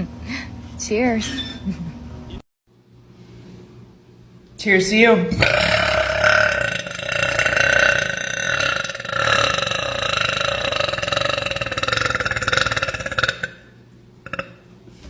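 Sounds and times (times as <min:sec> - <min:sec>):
woman burping: 0:05.4 - 0:13.7, 0:14.3 - 0:14.6.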